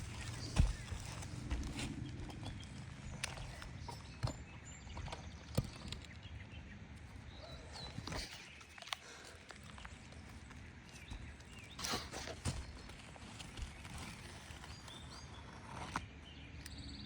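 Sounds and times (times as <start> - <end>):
knocks and scrapes on roof: 0.0 - 6.1
outdoor background noise: 0.0 - 17.0.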